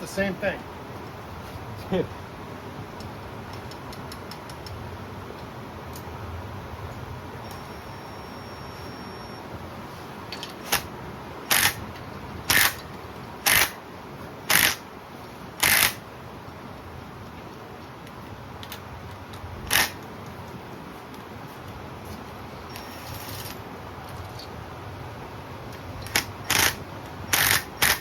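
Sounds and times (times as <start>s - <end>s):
ratchet wrench clicking: 11.5s - 11.8s, 12.5s - 12.8s, 13.4s - 13.8s, 14.5s - 14.8s, 15.6s - 16.0s, 18.6s - 20.0s, 26.0s - 28.0s.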